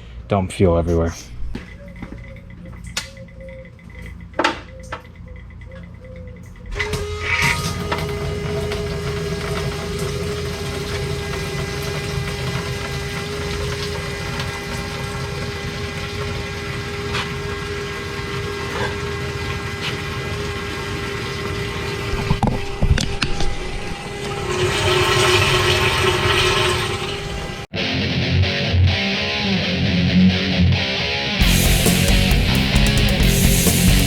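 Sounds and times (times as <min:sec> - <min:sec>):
fuel pump whining: 0:05.0 - 0:27.7, 0:31.4 - 0:34.0
liquid rushing into can: 0:24.2 - 0:27.5.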